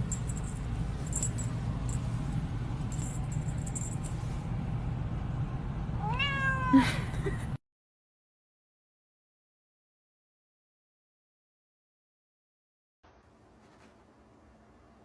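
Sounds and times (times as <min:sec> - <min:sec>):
steady low hum: 0:00.0 - 0:07.6
cat meowing: 0:06.0 - 0:06.8.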